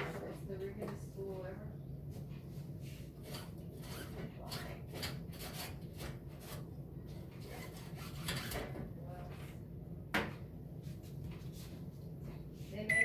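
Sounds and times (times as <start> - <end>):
scraping and rubbing: 2.4 - 9.7.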